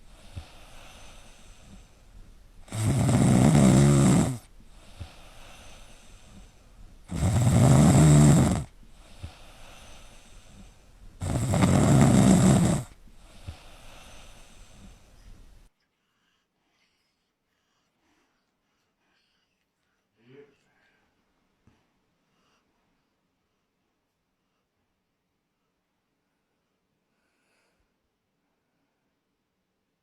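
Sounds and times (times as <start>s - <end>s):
dog snoring: 0.0s - 2.0s, 2.6s - 15.4s.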